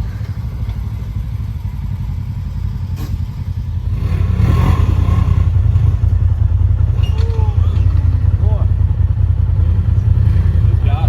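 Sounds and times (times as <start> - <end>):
utility vehicle engine revving: 0.0 - 11.0
gritty clatter: 5.9 - 8.5.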